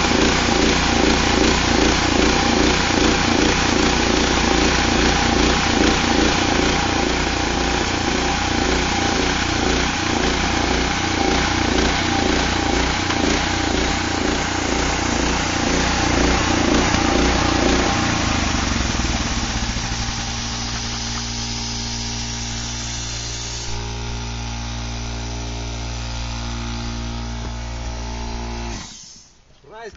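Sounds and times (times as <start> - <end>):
band sawmill blade cutting log: 0.0 - 29.3.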